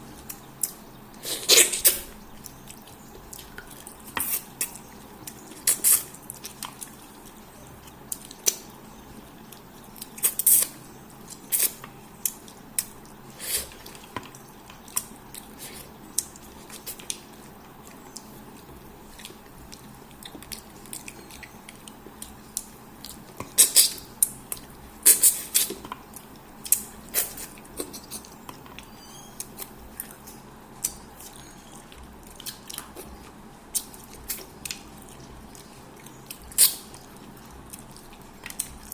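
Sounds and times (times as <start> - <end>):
person chewing and mouth smacking: 9.4 - 38.9.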